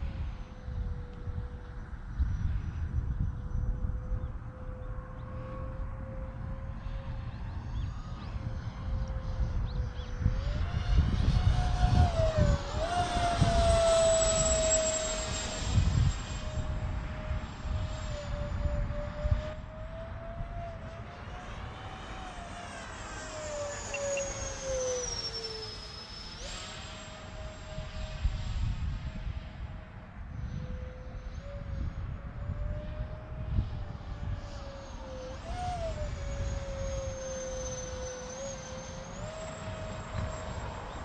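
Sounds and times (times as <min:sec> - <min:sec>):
wind buffeting microphone: 0:00.0 - 0:22.5, 0:26.8 - 0:41.0
electric ducted fan jet whine: 0:00.0 - 0:41.0.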